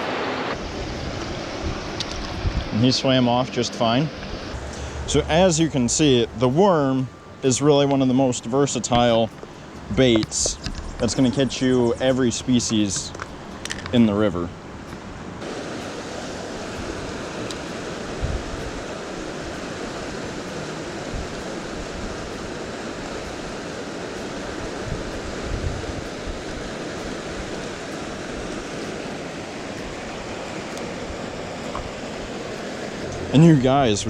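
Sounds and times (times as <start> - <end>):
river water rushing over rocks: 0.0 - 34.0
low bumps: 4.4 - 8.0.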